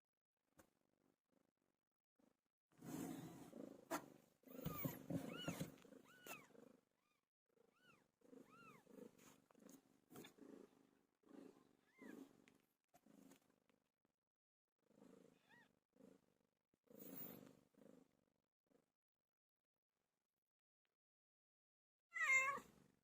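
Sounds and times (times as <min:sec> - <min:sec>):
cat purring: 0:02.8 - 0:13.5
high-pitched cat mews: 0:22.1 - 0:22.6.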